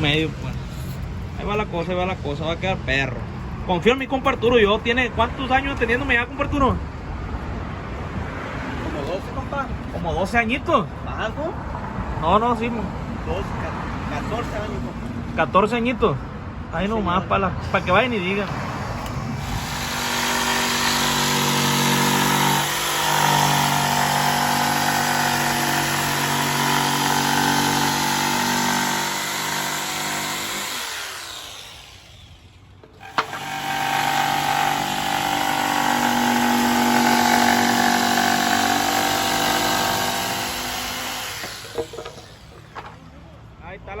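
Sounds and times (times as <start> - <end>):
power tool motor running: 17.6 - 42.9.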